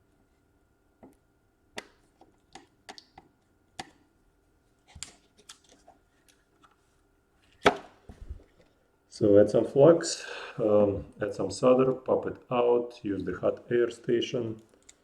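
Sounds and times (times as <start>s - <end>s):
faint steady hum: 0.0s - 15.0s
small clicks and taps: 1.8s - 4.0s.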